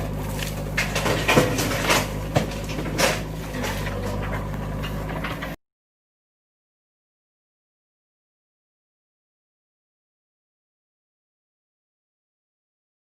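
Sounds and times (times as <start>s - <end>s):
backhoe engine running: 0.0s - 5.6s
sharp knocks and scrapes: 0.0s - 5.6s.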